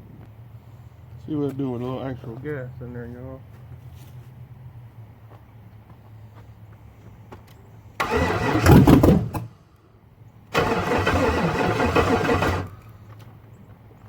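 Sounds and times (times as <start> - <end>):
engine firing briefly: 8.0 - 9.5, 10.5 - 12.9
engine starter cranking: 8.0 - 9.5, 10.5 - 12.9.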